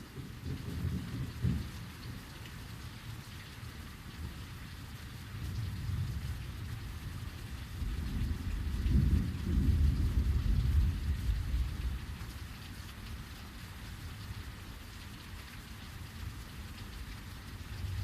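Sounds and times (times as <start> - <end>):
heavy rain falling: 0.0 - 18.0
thunder rumbling: 8.0 - 12.1.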